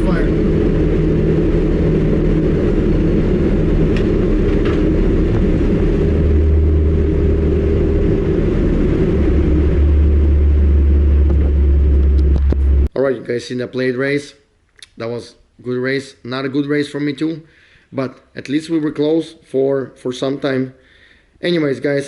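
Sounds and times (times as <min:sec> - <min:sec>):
car engine and road noise: 0:00.0 - 0:12.9.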